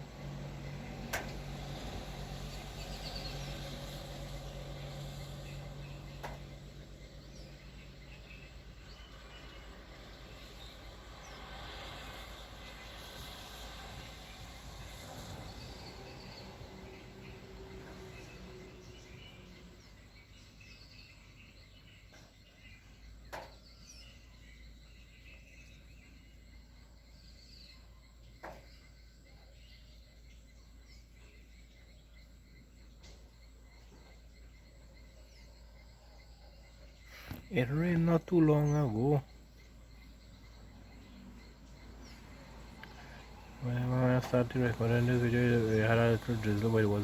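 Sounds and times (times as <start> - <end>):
faint bird chirps: 0.9 - 47.0.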